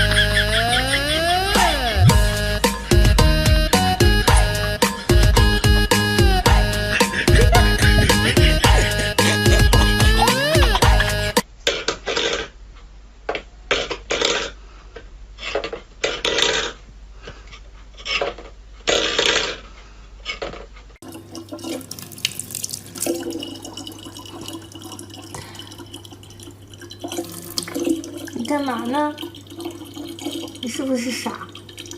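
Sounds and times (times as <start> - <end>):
steady low hum: 0.0 - 11.4
running water: 21.0 - 31.9
water splashing: 21.0 - 31.9.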